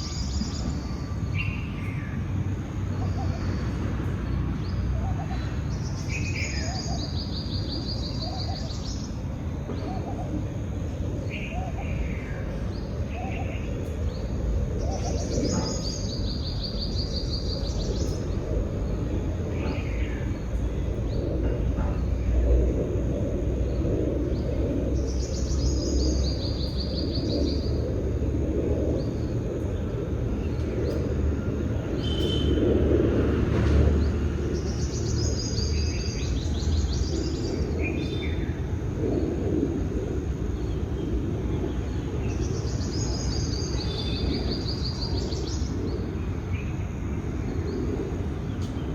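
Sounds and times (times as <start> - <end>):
songbird trill: 0.0 - 22.6, 23.6 - 28.3, 28.9 - 32.8, 33.6 - 39.3, 40.2 - 48.9
low rushing background noise: 0.0 - 48.9
single bird chirps: 32.0 - 32.6.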